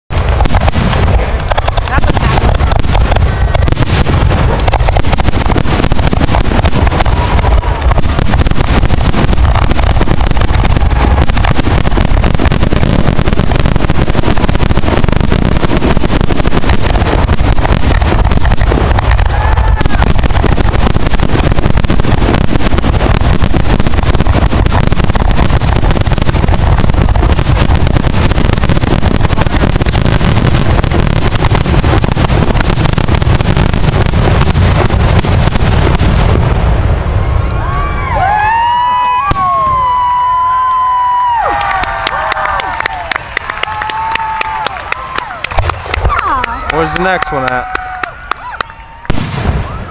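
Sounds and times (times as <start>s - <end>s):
fireworks barrage: 0.0s - 49.9s.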